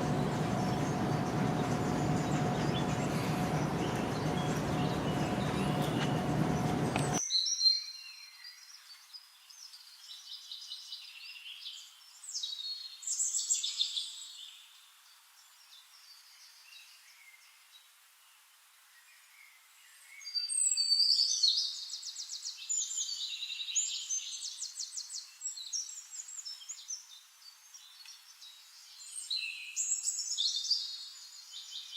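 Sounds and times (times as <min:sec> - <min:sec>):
songbirds chirping and trilling: 0:00.0 - 0:17.6.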